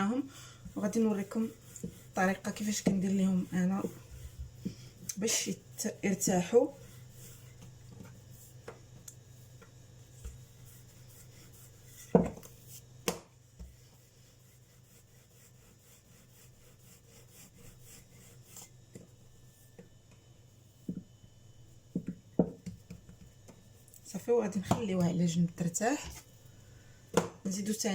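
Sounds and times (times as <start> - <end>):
hands rubbing dough: 0.0 - 19.8.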